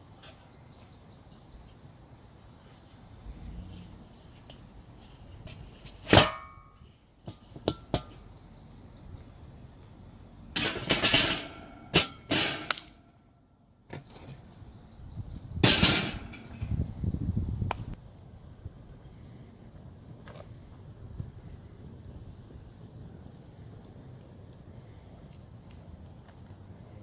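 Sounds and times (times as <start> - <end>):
short scraping or rustling: 3.2 - 6.2
metal kitchenware clanging: 15.6 - 16.6.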